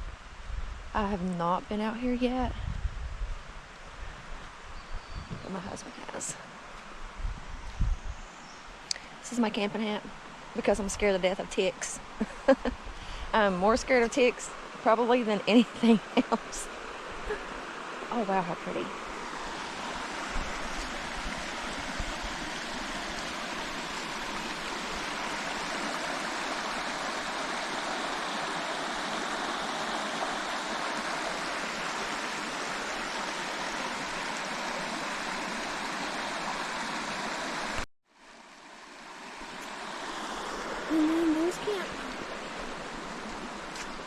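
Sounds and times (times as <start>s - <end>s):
stream water rushing: 8.4s - 44.0s.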